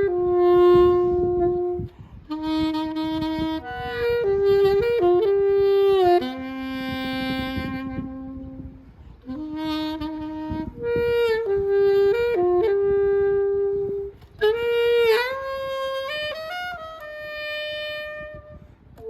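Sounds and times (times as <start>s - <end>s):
saxophone slow melody: 0.0s - 19.0s.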